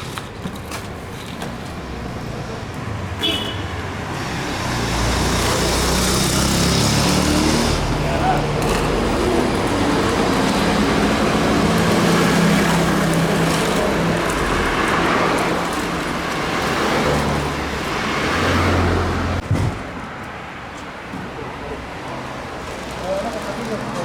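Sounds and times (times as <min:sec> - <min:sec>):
traffic noise: 0:00.0 - 0:24.0
vehicle engine humming: 0:00.4 - 0:19.4.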